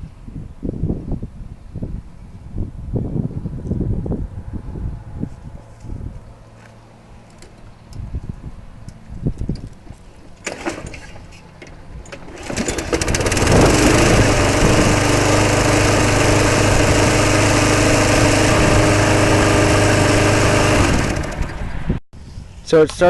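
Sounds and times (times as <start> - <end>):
lawnmower engine running: 9.8 - 21.9
pull cord starter: 10.4 - 21.7.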